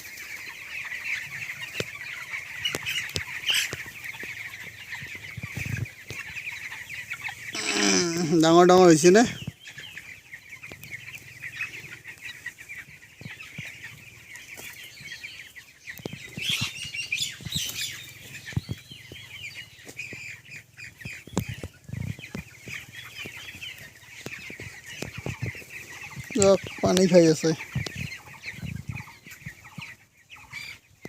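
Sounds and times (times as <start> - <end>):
chicks peeping: 0.0 - 31.0.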